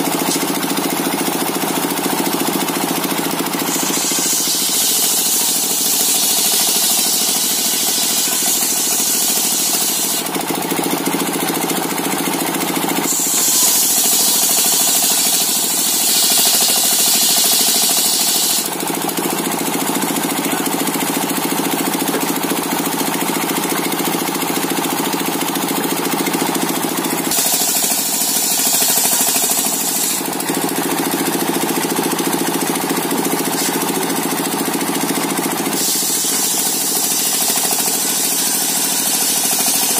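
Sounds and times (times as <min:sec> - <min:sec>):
sawmill machine drone: 0:00.0 - 0:39.9
high hiss of sawing wood: 0:03.5 - 0:10.3, 0:13.0 - 0:18.7, 0:27.3 - 0:30.3, 0:33.5 - 0:34.0, 0:35.7 - 0:39.9.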